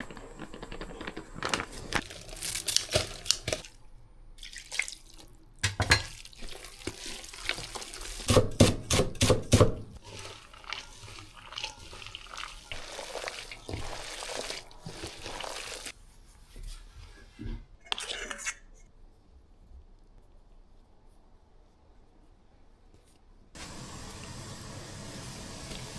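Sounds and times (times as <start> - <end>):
running or splashing water: 4.4 - 5.4, 6.1 - 8.3, 10.0 - 15.9.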